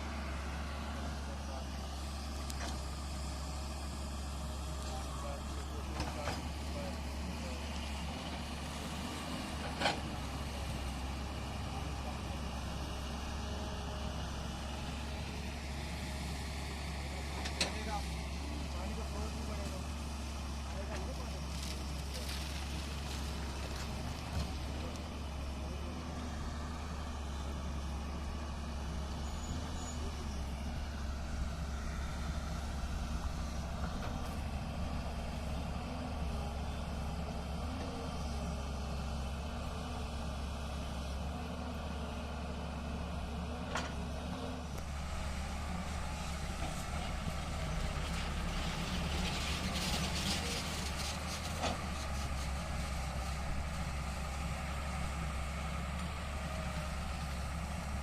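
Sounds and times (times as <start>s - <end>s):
excavator engine humming: 0.0s - 58.0s.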